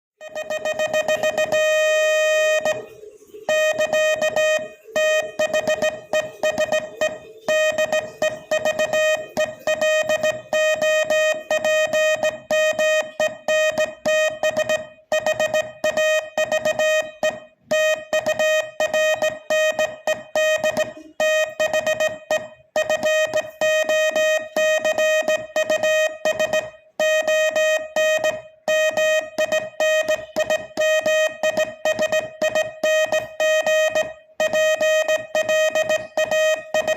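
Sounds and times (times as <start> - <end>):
morse code tone: 0.2 - 36.9.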